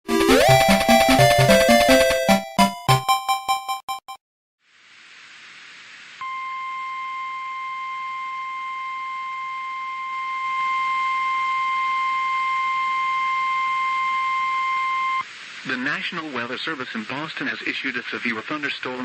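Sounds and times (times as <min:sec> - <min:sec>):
radio static hiss: 0:15.2 - 0:19.0.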